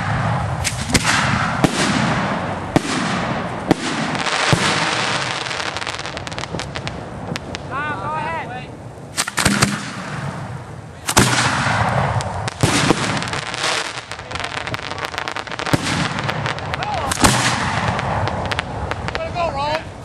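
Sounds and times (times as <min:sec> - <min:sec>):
firework bangs: 0:00.0 - 0:20.0
firework crackling: 0:00.0 - 0:20.0.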